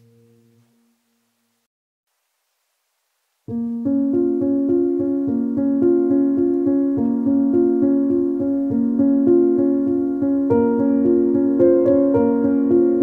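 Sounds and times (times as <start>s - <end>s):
keyboard notes playing: 3.5s - 13.0s.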